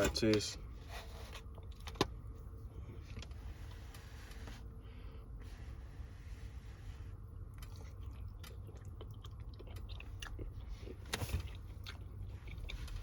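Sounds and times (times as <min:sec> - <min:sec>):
steady low hum: 0:00.0 - 0:13.0
person chewing food: 0:07.0 - 0:13.0.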